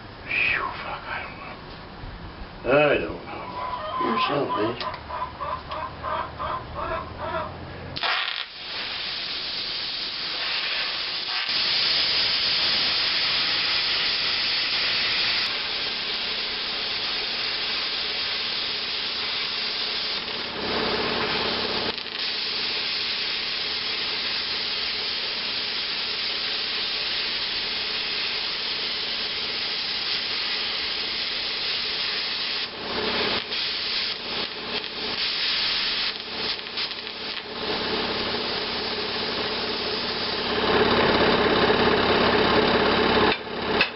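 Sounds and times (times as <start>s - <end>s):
plasma cutter hissing: 8.0s - 40.6s.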